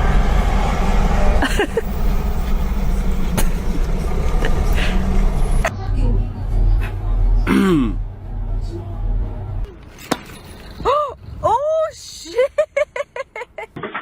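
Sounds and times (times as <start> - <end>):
vehicle engine rumbling: 0.0 - 13.7.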